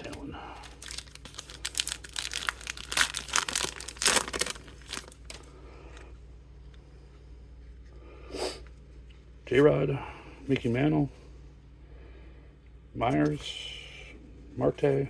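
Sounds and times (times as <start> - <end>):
wrapper tearing and crinkling: 0.0 - 5.5.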